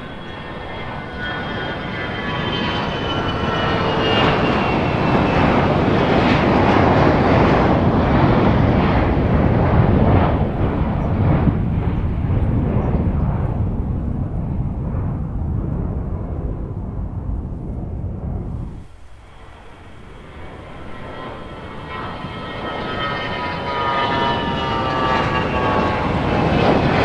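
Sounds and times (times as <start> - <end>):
high jet whine: 0.0 - 27.0
jet engine roar: 0.0 - 27.0.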